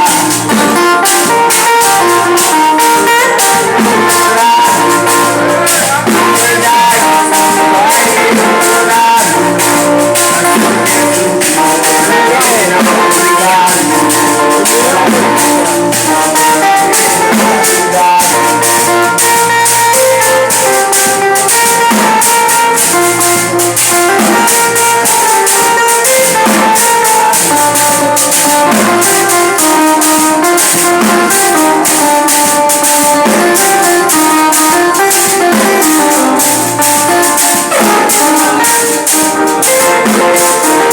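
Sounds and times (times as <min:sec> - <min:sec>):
plucked guitar: 0:00.0 - 0:40.9
tambourine beat: 0:00.0 - 0:40.9.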